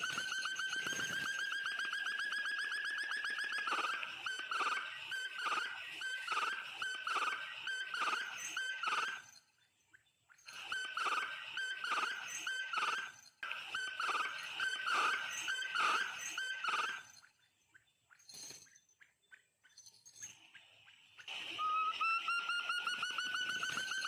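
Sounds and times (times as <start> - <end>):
quail calling: 0.0 - 9.2, 10.5 - 17.1, 21.2 - 24.0.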